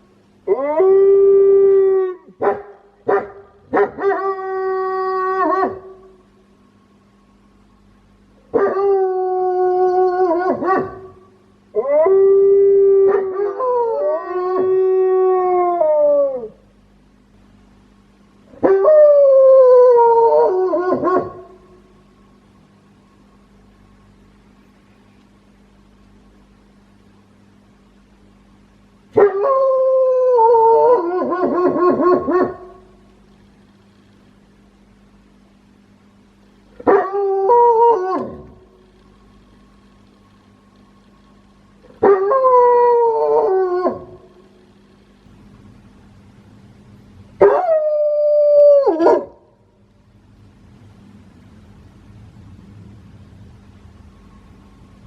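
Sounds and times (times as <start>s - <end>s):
dog howling: 11.8s - 16.6s, 36.8s - 38.7s, 41.9s - 44.5s, 47.4s - 49.4s
wolfdog howling: 29.2s - 32.8s, 36.7s - 38.7s, 41.8s - 44.5s, 47.4s - 49.4s.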